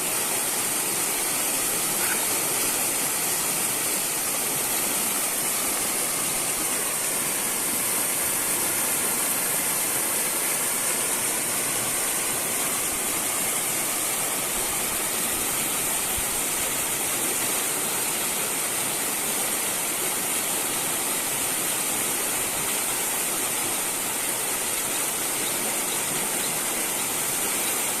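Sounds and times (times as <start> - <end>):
river water rushing: 0.0 - 28.0.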